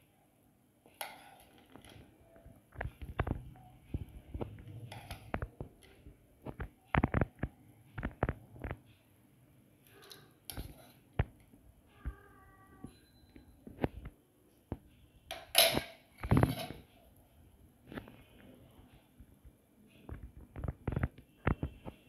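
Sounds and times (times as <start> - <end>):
spoon clinking against bowl: 4.9 - 5.4, 15.3 - 16.8.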